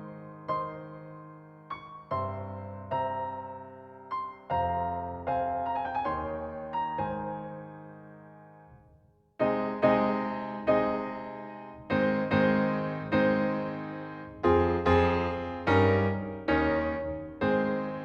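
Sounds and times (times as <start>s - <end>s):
gentle piano chords: 0.0s - 18.0s.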